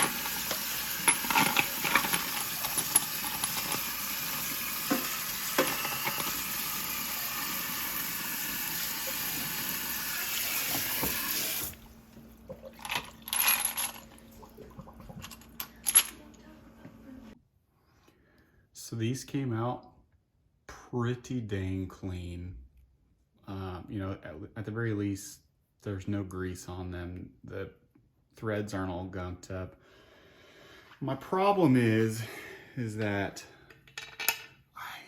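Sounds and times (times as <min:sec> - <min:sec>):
tap water running into sink: 0:00.0 - 0:11.9.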